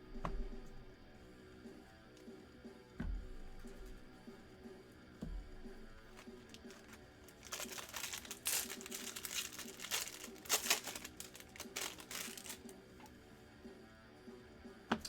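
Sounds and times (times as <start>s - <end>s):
foil wrapper tearing and crinkling: 6.0s - 12.8s.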